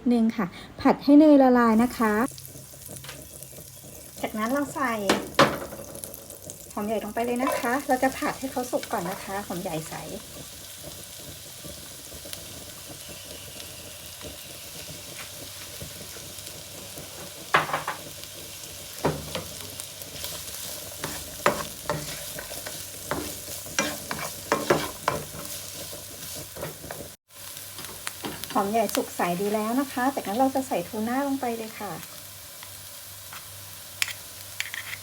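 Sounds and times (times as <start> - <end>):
onion sizzling in a frying pan: 1.6 - 35.0
utensil scraping and tapping pan: 7.4 - 7.8, 21.0 - 25.6.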